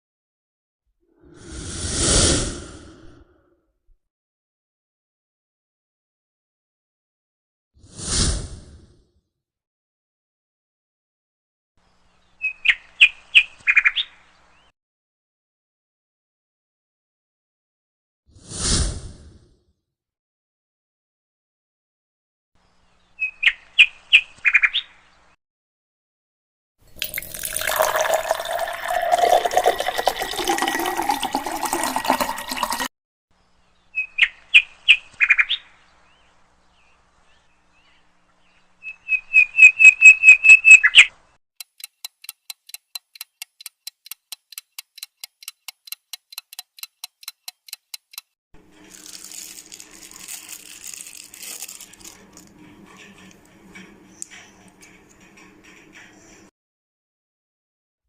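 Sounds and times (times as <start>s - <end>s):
hiss: 1.4s - 3.0s
fast chirping trill: 39.2s - 48.2s
steady ticking: 41.6s - 48.3s.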